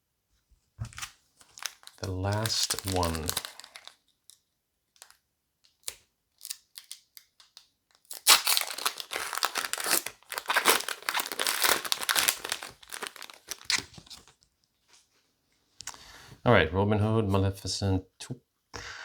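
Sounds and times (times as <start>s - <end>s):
wrapper tearing and crinkling: 0.9s - 4.1s, 5.8s - 7.3s, 8.0s - 14.3s.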